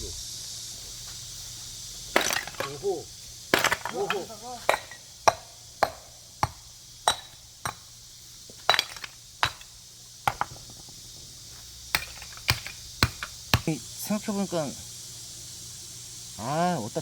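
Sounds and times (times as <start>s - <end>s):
earthenware crock smashing: 2.1s - 10.8s, 11.9s - 13.8s.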